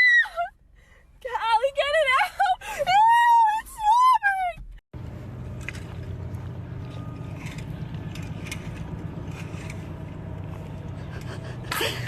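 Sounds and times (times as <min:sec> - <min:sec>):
low rumble: 0:05.0 - 0:12.0.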